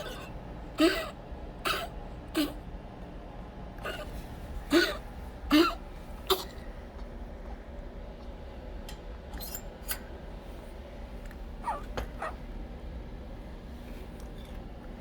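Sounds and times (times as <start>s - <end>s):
dog coughing: 0.0s - 2.7s, 3.8s - 6.8s, 11.6s - 12.4s.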